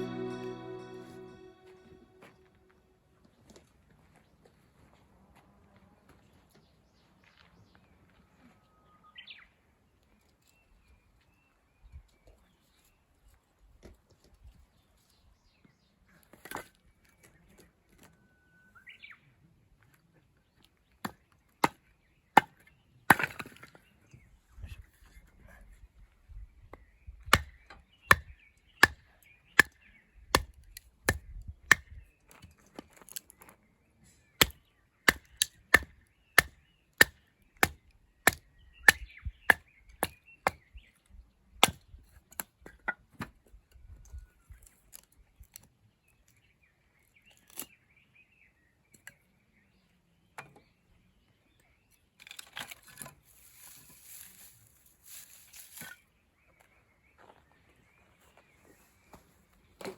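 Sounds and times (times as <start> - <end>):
firewood being chopped: 22.4 - 23.7, 27.2 - 32.0, 34.4 - 40.7, 41.6 - 43.3
rustling: 53.2 - 56.0.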